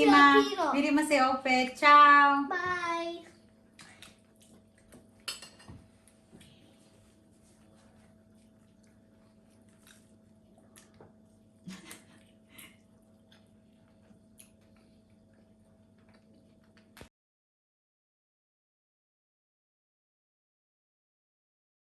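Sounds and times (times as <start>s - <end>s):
low steady hum: 0.0s - 17.1s.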